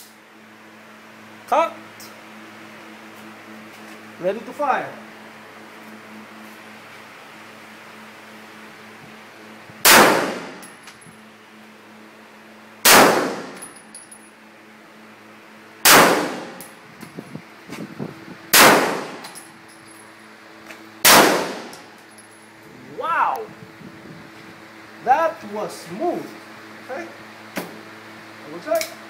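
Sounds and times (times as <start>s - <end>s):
pistol shots echoing: 9.9s - 10.6s, 12.9s - 13.6s, 15.9s - 16.6s, 18.6s - 19.2s, 21.0s - 21.8s.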